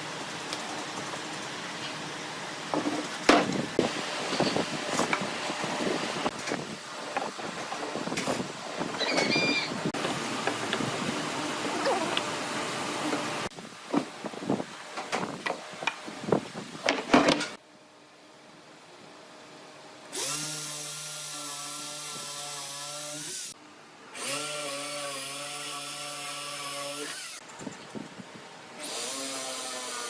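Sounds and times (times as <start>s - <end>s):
power tool motor running: 24.2s - 27.4s, 28.8s - 30.0s.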